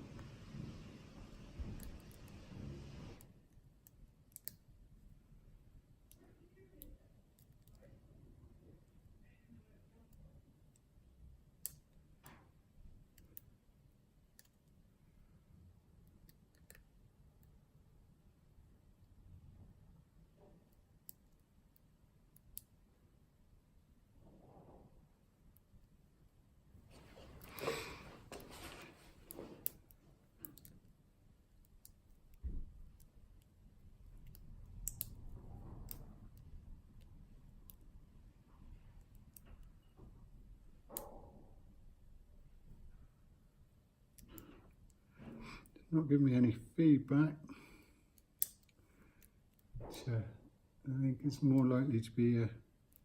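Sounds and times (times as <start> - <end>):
lock pick clicks and ticks: 29.6 - 30.8, 34.2 - 35.2, 48.2 - 49.7.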